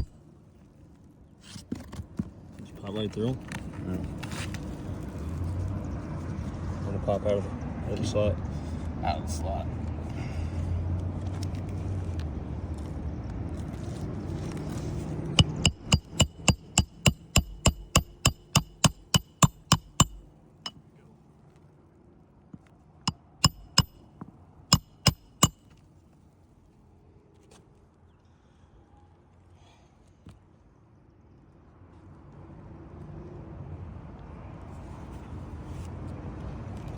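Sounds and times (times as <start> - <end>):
hammer blows on metal bar: 15.4 - 20.2, 23.4 - 24.0, 24.8 - 25.6.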